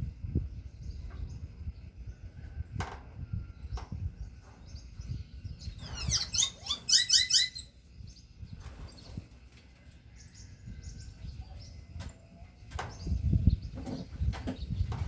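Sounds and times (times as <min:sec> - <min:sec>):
wind buffeting microphone: 0:00.0 - 0:15.0
bird chirping: 0:04.0 - 0:09.2.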